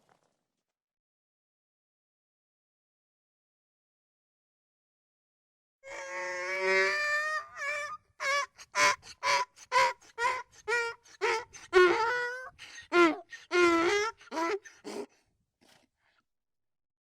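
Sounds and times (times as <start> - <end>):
donkey braying: 5.9 - 15.1.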